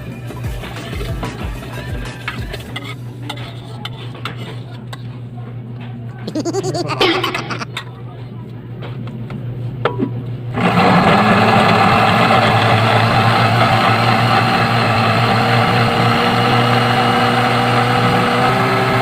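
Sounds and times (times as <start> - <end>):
electric blender running: 10.6 - 19.0.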